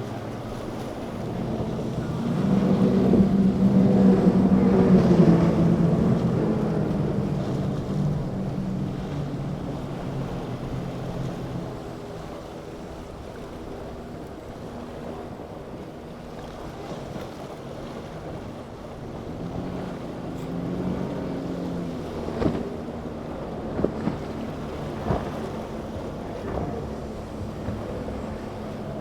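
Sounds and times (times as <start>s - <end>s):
powerboat engines droning: 0.0s - 29.0s
water wash: 0.0s - 29.0s
wind on microphone: 0.0s - 29.0s.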